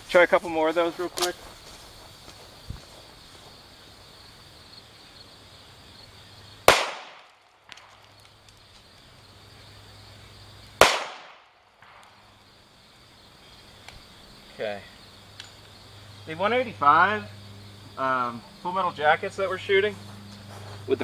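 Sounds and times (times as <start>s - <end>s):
pistol shots with echo: 6.7s - 7.9s, 10.8s - 12.2s.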